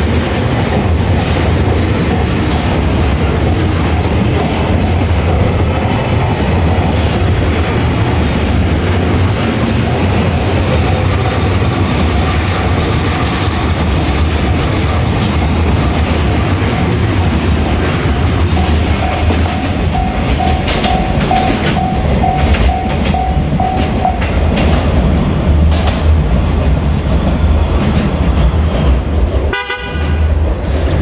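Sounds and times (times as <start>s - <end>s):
train rumbling past: 0.0s - 31.0s
wheels clacking over rail joints: 0.0s - 31.0s
level crossing alarm ringing: 18.0s - 24.6s.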